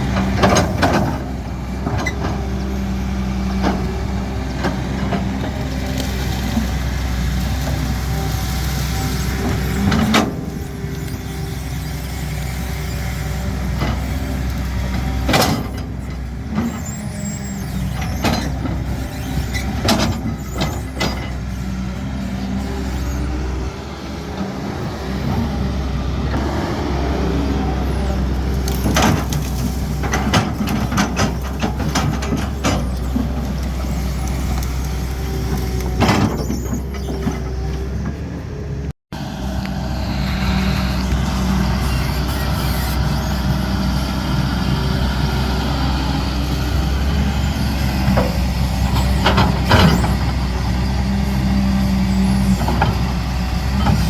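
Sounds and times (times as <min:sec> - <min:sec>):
excavator diesel engine running: 0:00.0 - 0:54.0.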